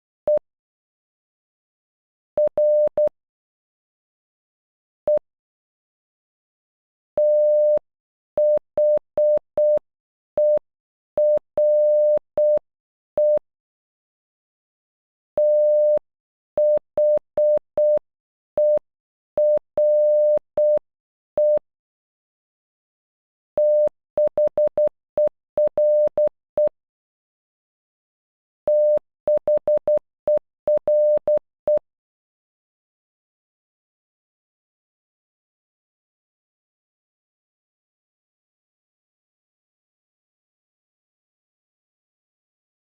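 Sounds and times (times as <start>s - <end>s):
morse code beeps: 2.4s - 3.1s, 11.2s - 12.6s, 15.4s - 16.0s, 16.6s - 18.0s, 19.4s - 20.8s, 23.6s - 26.7s, 28.7s - 31.8s.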